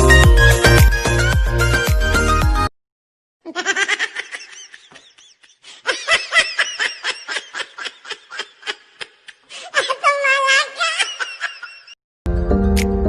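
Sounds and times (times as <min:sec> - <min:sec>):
high-pitched laughing: 0:03.4 - 0:12.0.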